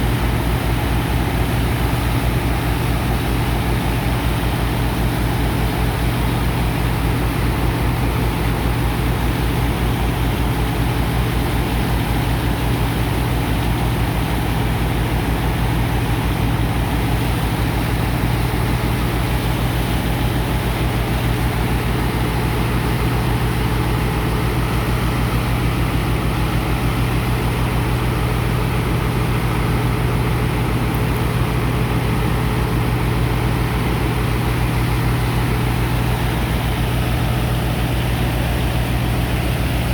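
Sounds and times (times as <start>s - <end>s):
engine and pump droning: 0.0s - 39.9s.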